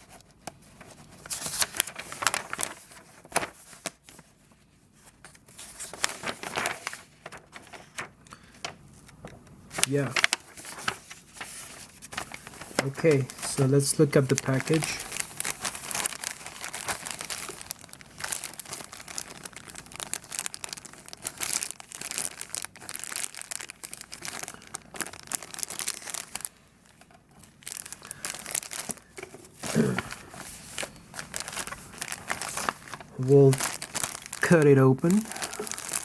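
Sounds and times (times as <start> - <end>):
plastic packaging crinkling: 0.0 - 4.4, 5.0 - 36.0.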